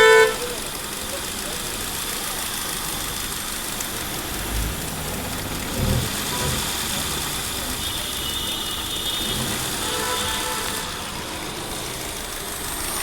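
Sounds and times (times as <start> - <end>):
car engine idling and misfiring: 0.0 - 13.0.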